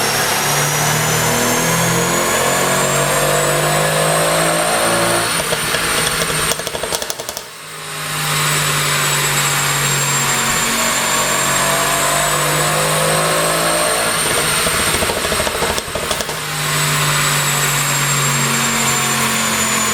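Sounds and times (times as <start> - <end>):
car engine revving: 0.0 - 7.7, 8.3 - 19.9
exhaust crackling and popping: 5.2 - 7.6, 13.8 - 17.1.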